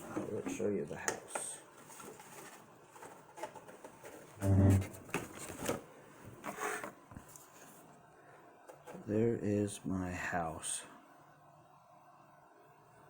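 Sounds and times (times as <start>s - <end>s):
short low hum: 4.4s - 5.1s.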